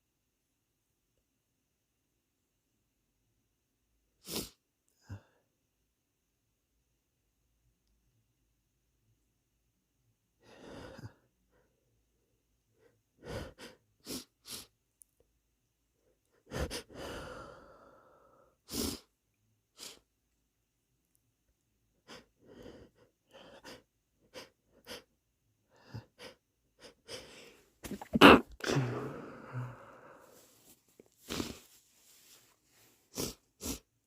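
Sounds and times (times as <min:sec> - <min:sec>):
person sniffling: 0:04.2 - 0:05.4, 0:25.8 - 0:33.9
stifled sneezes: 0:27.8 - 0:29.4.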